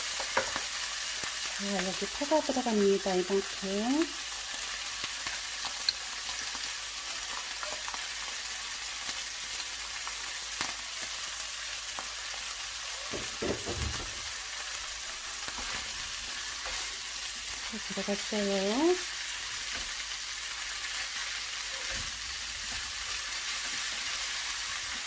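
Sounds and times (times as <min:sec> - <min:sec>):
vegetables sizzling in a frying pan: 0:00.0 - 0:25.0
utensil scraping pan: 0:21.0 - 0:23.9.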